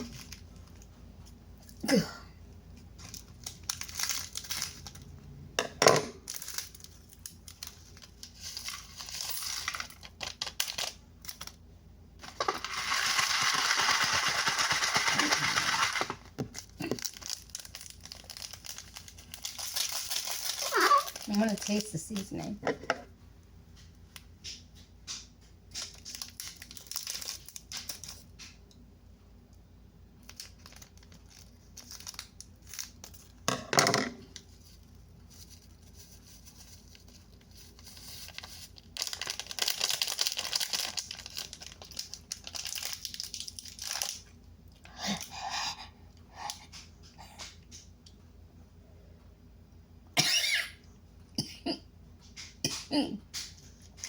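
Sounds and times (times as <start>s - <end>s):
plastic packet tearing and crinkling: 0.0s - 0.9s, 2.9s - 5.1s, 6.2s - 11.6s, 12.2s - 22.2s, 25.7s - 28.4s, 30.2s - 33.5s, 34.4s - 45.2s.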